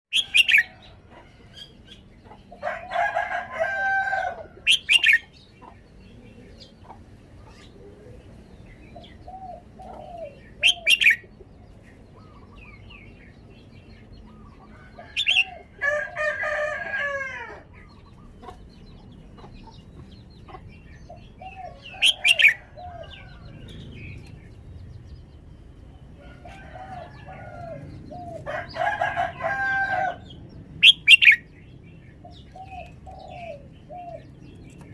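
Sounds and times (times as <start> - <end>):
rooster crowing: 2.6 - 4.6, 14.8 - 17.7, 26.2 - 30.3.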